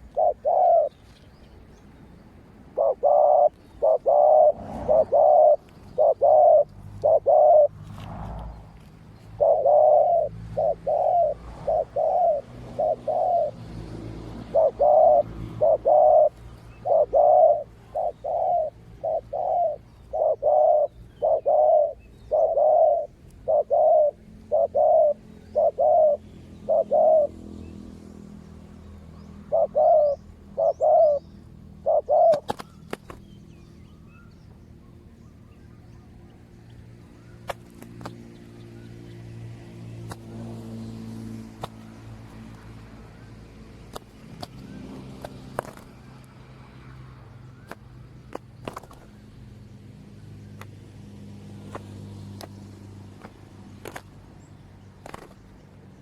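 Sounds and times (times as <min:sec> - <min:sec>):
dove cooing: 0:00.0 - 0:01.1, 0:02.6 - 0:08.6, 0:09.2 - 0:27.7, 0:29.4 - 0:33.1.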